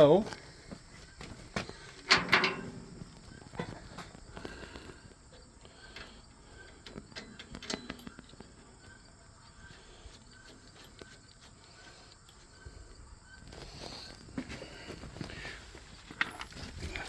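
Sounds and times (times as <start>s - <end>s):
metal clanks and knocks: 2.0s - 3.8s, 6.9s - 8.6s.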